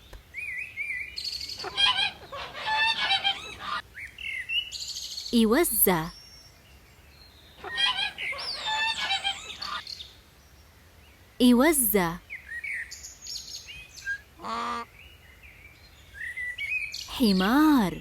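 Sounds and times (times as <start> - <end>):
geese honking: 1.6 - 3.8.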